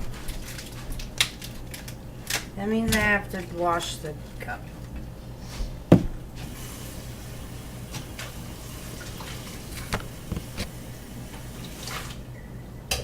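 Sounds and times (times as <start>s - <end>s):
tap water running: 6.2s - 12.3s.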